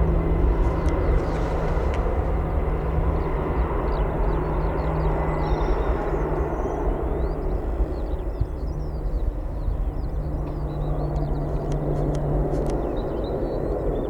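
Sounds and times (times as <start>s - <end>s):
aircraft engine rumble: 0.0s - 14.0s
light ticks: 10.4s - 12.8s.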